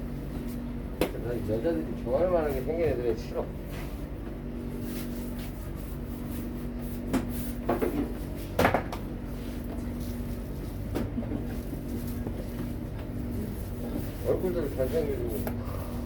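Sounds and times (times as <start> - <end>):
steady machine hum: 0.0 - 16.0
kitchen knocks and clunks: 7.1 - 9.0.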